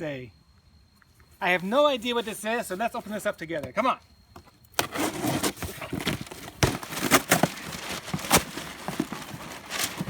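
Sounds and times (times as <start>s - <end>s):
cardboard tearing: 4.8s - 10.0s
packing rustling and crinkling: 4.8s - 10.0s.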